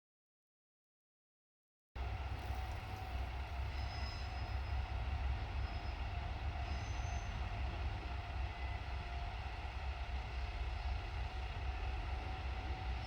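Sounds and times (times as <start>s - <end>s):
diesel railcar low rumble: 2.0s - 13.0s.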